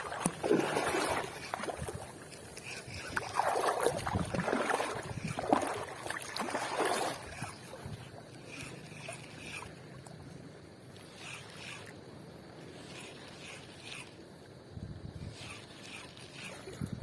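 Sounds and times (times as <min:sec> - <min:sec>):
water sloshing at shoreline: 0:00.0 - 0:17.0.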